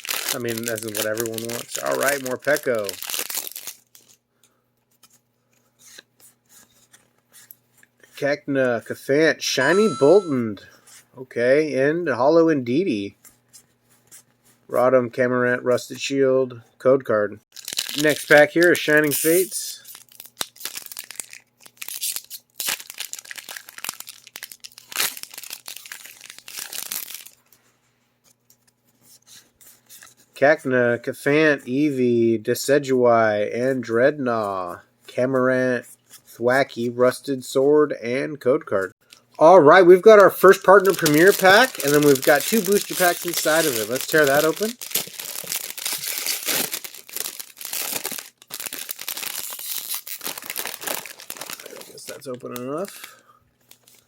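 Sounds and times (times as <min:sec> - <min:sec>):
foil wrapper tearing and crinkling: 0:00.0 - 0:04.2, 0:17.5 - 0:27.5, 0:40.0 - 0:54.0.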